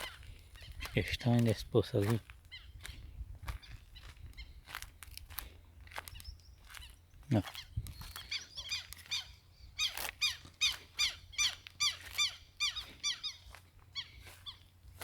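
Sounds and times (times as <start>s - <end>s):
animal squeaky calls: 2.5s - 3.0s, 6.2s - 14.8s.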